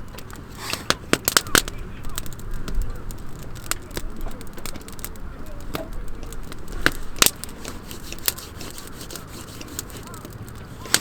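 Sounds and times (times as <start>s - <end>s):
sharp clicks and snaps: 0.0s - 11.0s.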